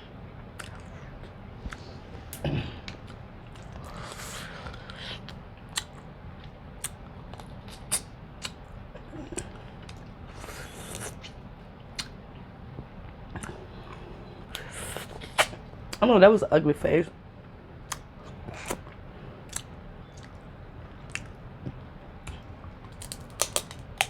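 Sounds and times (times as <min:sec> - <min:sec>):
chewing and food handling clicks: 0:00.6 - 0:03.8, 0:13.3 - 0:14.7, 0:17.9 - 0:24.0.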